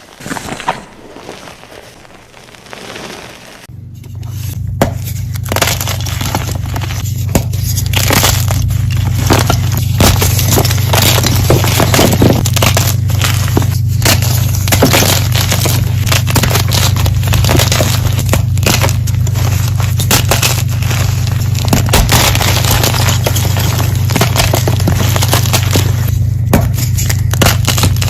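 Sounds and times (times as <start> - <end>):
chalk crunching in a bucket: 0.0 - 3.7
steady low hum: 0.0 - 28.0.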